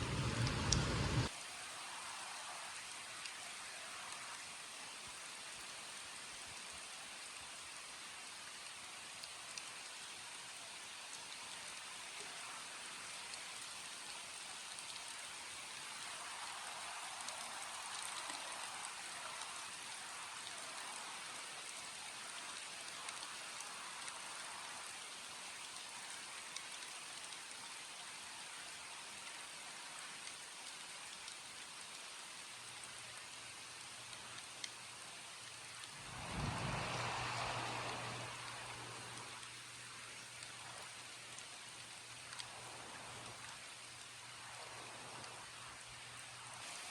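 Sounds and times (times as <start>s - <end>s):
low hum: 0.0s - 1.3s, 36.0s - 39.4s
low rumble: 0.0s - 1.3s, 36.0s - 39.2s
steady rainfall: 0.0s - 46.9s.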